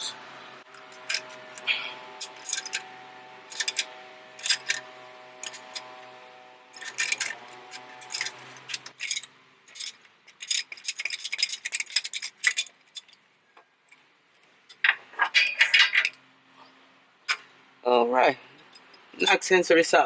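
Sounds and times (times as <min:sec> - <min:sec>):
ratchet wrench clicking: 0:00.9 - 0:02.9, 0:03.5 - 0:04.8, 0:05.4 - 0:05.9, 0:06.8 - 0:13.2.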